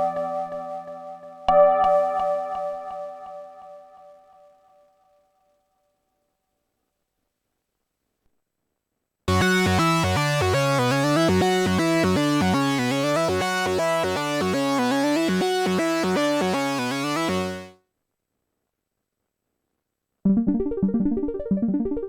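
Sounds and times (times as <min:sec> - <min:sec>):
synthesizer run over bass line: 0:09.3 - 0:17.7.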